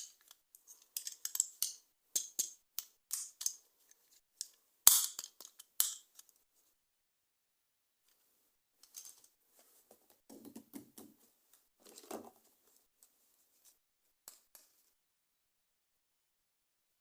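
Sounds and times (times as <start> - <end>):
toy packaging rustling and clicking: 0.0 - 6.4, 10.3 - 12.9.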